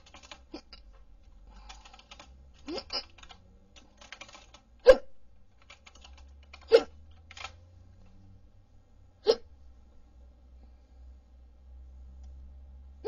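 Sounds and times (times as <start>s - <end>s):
person hiccupping: 2.7s - 3.1s, 9.2s - 9.5s.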